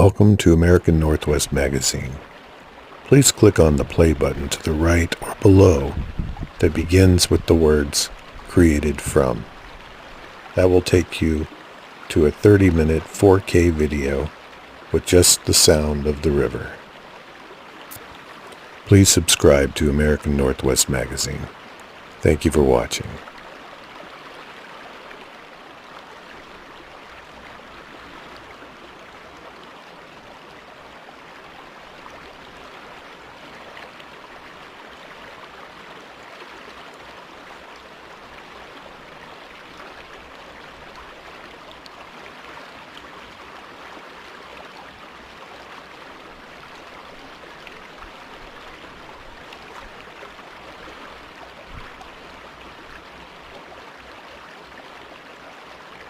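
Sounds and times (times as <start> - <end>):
river water rushing over rocks: 7.8 - 12.1, 23.1 - 56.0.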